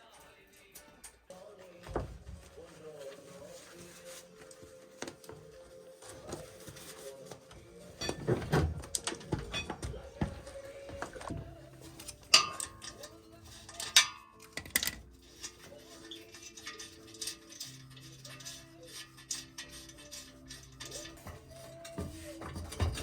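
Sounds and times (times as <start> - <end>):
metal tools clinking and knocking: 7.8 - 23.0
sharp ringing metal clanks: 12.3 - 13.1.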